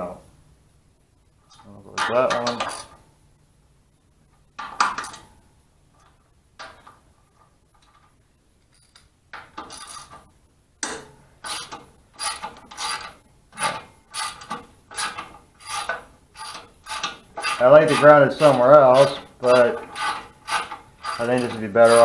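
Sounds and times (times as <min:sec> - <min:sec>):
ratchet strokes: 0:11.4 - 0:22.0.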